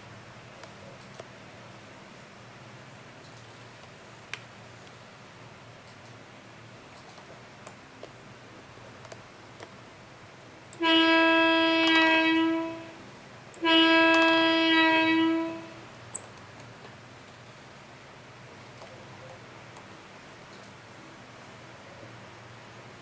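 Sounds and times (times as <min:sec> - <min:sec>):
train horn blasts: 0:10.8 - 0:13.0, 0:13.6 - 0:15.9.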